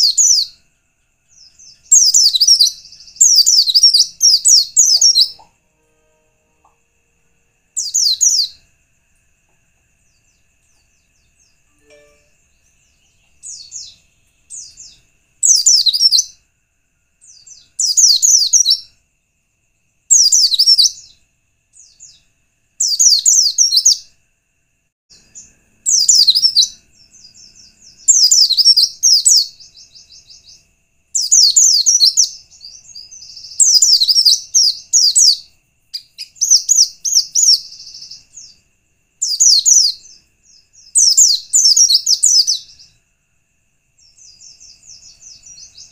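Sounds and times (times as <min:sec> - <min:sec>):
bird high twittering song: 0:00.0 - 0:00.6, 0:01.3 - 0:05.6, 0:07.7 - 0:08.7, 0:10.0 - 0:16.4, 0:17.2 - 0:19.0, 0:20.1 - 0:24.1, 0:25.1 - 0:43.0, 0:44.0 - 0:45.9
faint steady high tone: 0:00.0 - 0:19.0.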